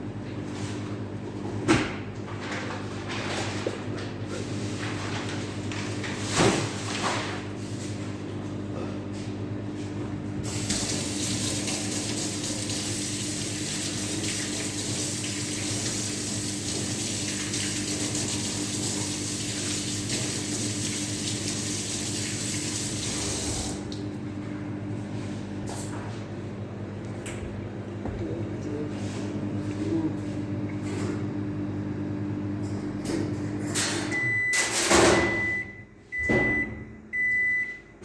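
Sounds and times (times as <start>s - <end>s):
electrical hum: 0.0s - 38.0s
water running: 10.4s - 24.2s.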